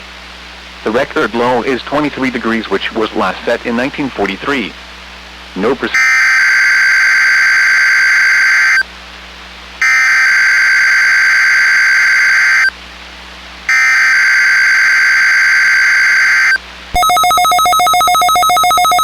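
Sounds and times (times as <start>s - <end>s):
buzzy digital data tones: 9.8s - 12.7s, 13.7s - 19.0s.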